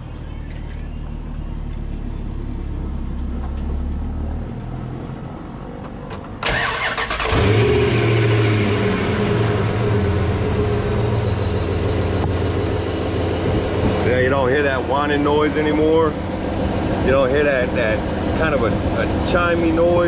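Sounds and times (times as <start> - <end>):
engine starter cranking: 6.4 - 7.7
engine idling: 6.4 - 20.0.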